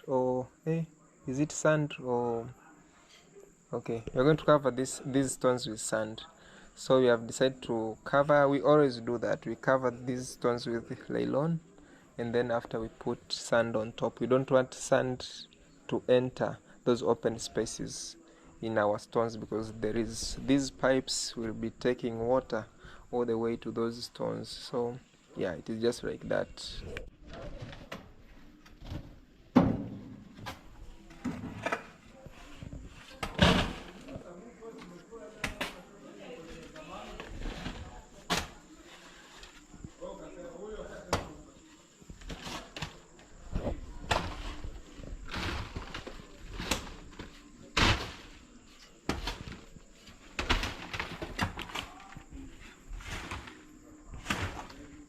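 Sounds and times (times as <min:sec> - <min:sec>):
knocks and scraping: 0:36.5 - 0:39.9, 0:42.0 - 0:55.0.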